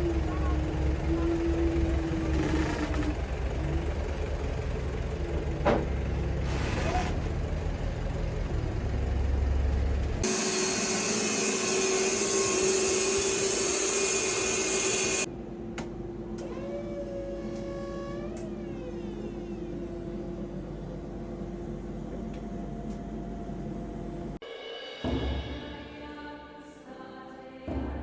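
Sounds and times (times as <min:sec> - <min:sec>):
woodworking machinery rumbling: 0:00.0 - 0:15.3, 0:16.4 - 0:24.4
high-pitched hissing machine noise: 0:10.2 - 0:15.3.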